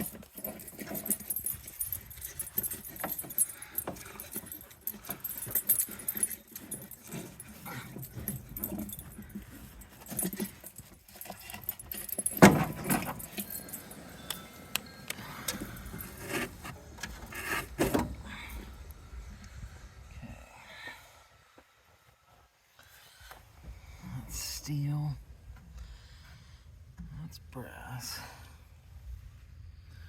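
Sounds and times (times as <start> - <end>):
small metal parts clinking: 0.0 - 18.1.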